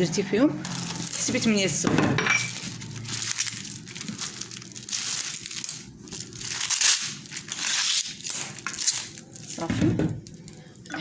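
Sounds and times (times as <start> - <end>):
cling film crinkling: 2.5 - 9.6.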